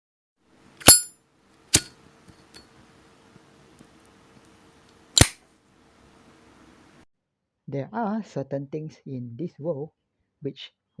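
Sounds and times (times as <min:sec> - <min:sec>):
lighter lid clicking: 0:05.2 - 0:05.4.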